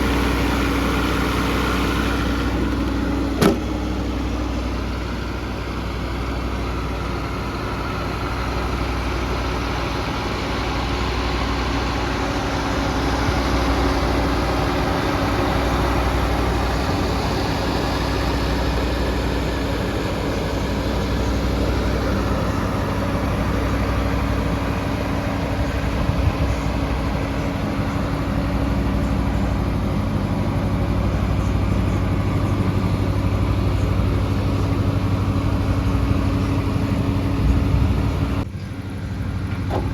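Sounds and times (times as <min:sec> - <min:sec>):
mini excavator engine humming: 0:00.0 - 0:39.9
brief knock: 0:03.4 - 0:03.7.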